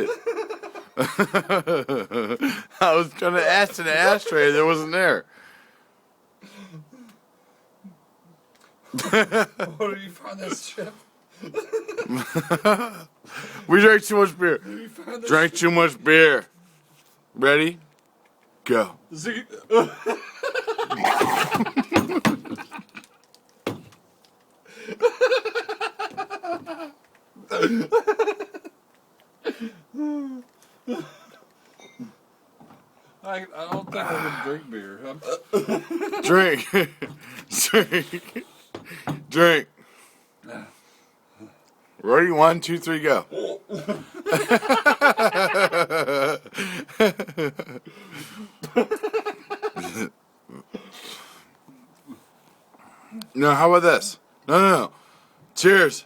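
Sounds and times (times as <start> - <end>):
people laughing: 0.0 - 2.7, 9.0 - 9.8, 11.4 - 13.1, 19.7 - 23.1, 24.7 - 28.7, 35.2 - 38.4, 43.3 - 47.8, 48.6 - 50.1
people laughing and exclaiming: 43.3 - 47.8.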